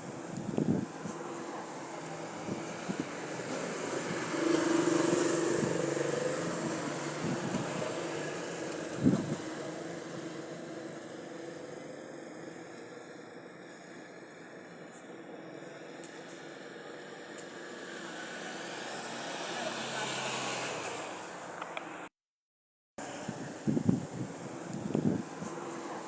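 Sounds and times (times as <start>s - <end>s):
vehicle engine passing by: 1.3s - 10.6s, 17.5s - 21.6s.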